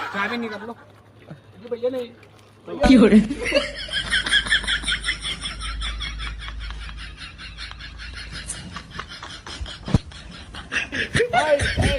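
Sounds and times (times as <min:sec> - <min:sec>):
rhythmic snickering laughter: 0:03.3 - 0:11.9.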